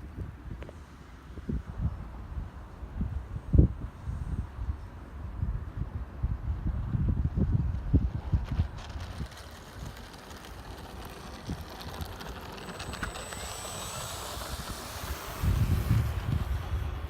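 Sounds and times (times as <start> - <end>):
wind buffeting microphone: 1.3 - 17.0
model airplane motor whine: 8.6 - 17.0.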